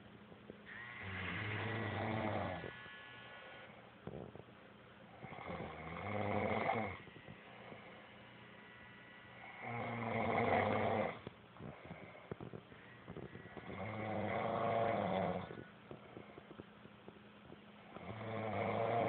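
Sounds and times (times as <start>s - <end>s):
man snoring: 1.0s - 2.8s, 5.2s - 7.0s, 9.4s - 12.2s, 13.2s - 15.7s, 17.9s - 19.0s.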